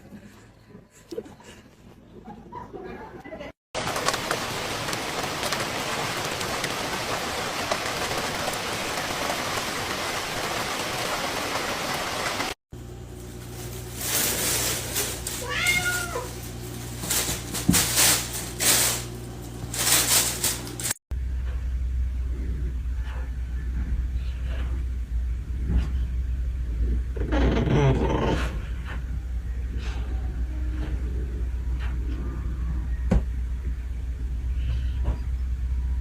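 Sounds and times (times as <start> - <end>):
bursts of rustling noise: 3.8 - 21.0
cat meowing: 15.4 - 16.3
low hum: 16.3 - 36.0.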